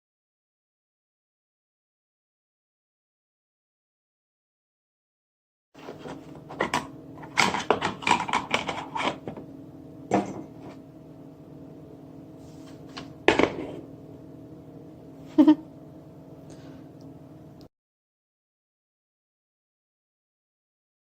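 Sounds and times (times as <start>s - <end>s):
hard objects clattering: 5.8s - 9.4s
low electrical hum: 5.8s - 17.7s.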